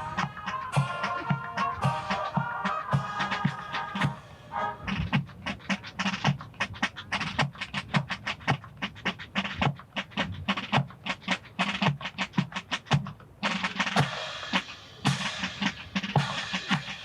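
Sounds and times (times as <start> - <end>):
bass drum thuds: 0.0 - 4.2
snare drum strokes: 0.0 - 17.0.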